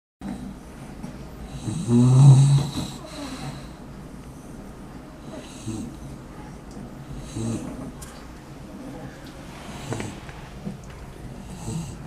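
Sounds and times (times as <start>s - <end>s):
pet snoring: 1.5s - 3.7s, 5.3s - 6.1s, 7.1s - 7.9s, 9.7s - 10.3s, 11.4s - 12.0s.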